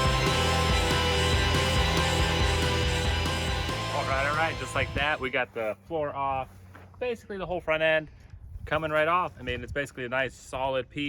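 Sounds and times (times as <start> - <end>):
background music with bass line: 0.0 - 5.4.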